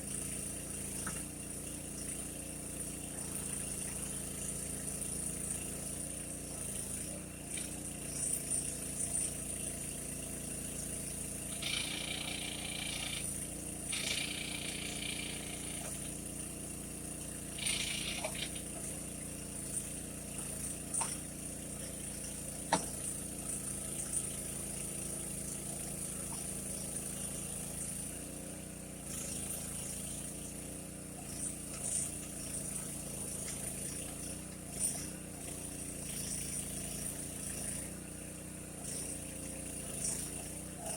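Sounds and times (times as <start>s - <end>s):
small engine running: 0.0s - 40.9s
high-pitched whining: 11.5s - 16.0s.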